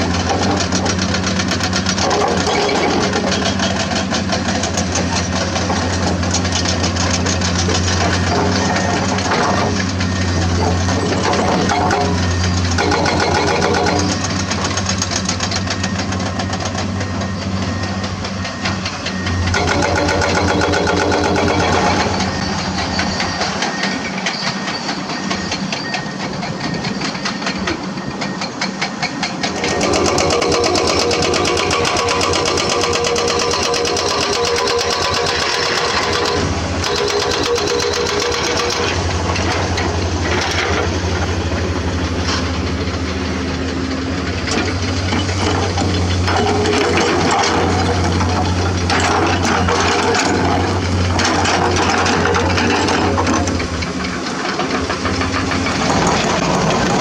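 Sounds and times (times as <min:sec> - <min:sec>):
fast mechanical clatter: 0:00.0 - 0:15.8, 0:19.5 - 0:22.4, 0:28.7 - 0:41.0, 0:44.5 - 0:57.0
excavator diesel engine: 0:00.0 - 0:57.0.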